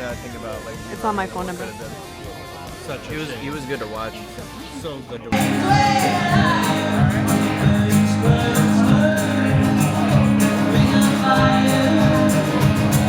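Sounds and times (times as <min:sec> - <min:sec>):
guitar: 0:00.0 - 0:13.0
bass and beat: 0:05.4 - 0:13.0
person singing: 0:05.4 - 0:13.0.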